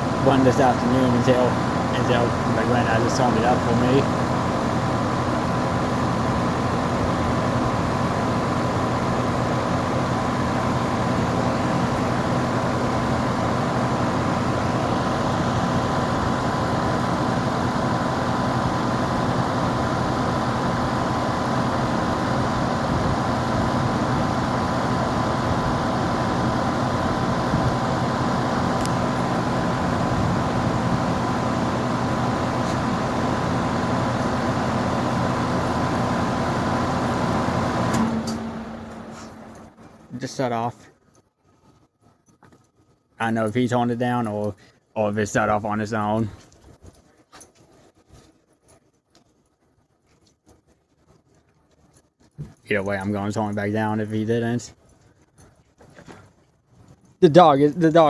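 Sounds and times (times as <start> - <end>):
fan blowing air: 0.0 - 40.8
heat pump compressor humming: 0.0 - 40.9.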